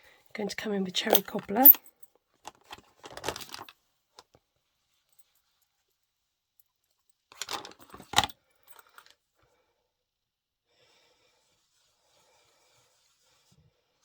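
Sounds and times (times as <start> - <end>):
plastic craft supplies clattering: 2.5 - 3.7.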